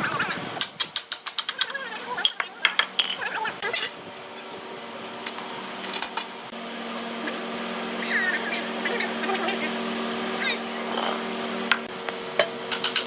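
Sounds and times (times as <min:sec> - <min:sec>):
steady machine hum: 0:03.5 - 0:13.0.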